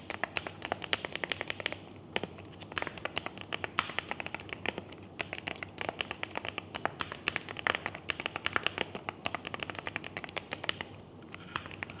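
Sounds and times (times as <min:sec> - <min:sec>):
mechanical keyboard typing: 0:02.6 - 0:12.0.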